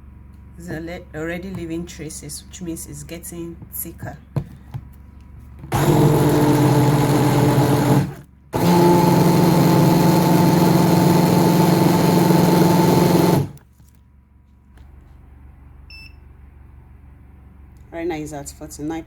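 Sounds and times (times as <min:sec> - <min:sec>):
electric blender running: 0:05.7 - 0:13.6.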